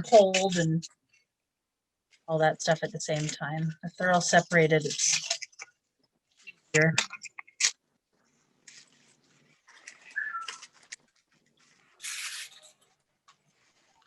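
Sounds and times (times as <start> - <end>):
paper liners rustling: 4.4 - 5.7, 6.3 - 14.0
parrot whistled call: 10.1 - 10.6.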